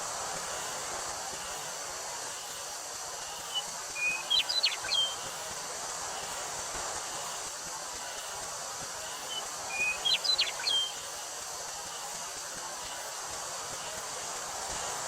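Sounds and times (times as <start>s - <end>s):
cicadas droning: 0.0s - 15.0s
wind through a wheat field: 0.0s - 15.0s
bird chirping and whistling: 4.0s - 5.2s, 9.7s - 10.9s.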